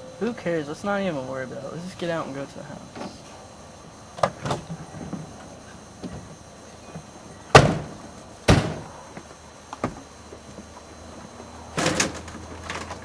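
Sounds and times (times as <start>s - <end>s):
car doors slamming: 7.5s - 8.9s.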